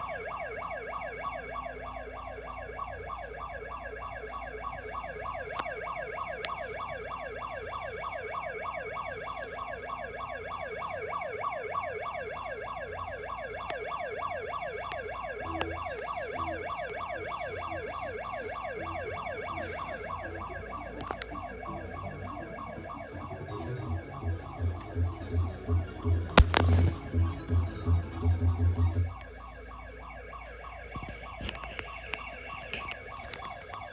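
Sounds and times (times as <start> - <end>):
downward sweeping alarm tone: 13.8 - 33.9
faint low pulses: 15.2 - 33.2.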